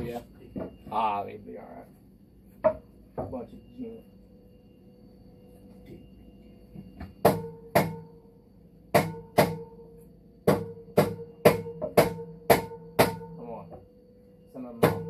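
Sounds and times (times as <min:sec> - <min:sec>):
sharp ringing strikes: 0:06.8 - 0:15.0.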